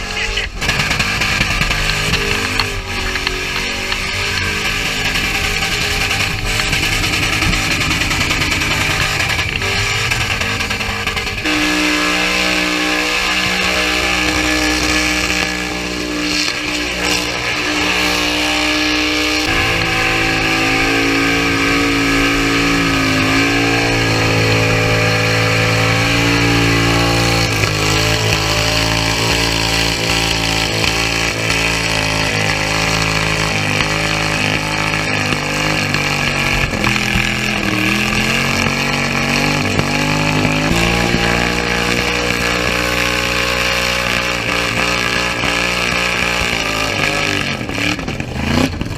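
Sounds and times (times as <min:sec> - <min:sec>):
guitar-driven music: 0:00.0 - 0:33.8
car engine at high revs: 0:00.0 - 0:48.9.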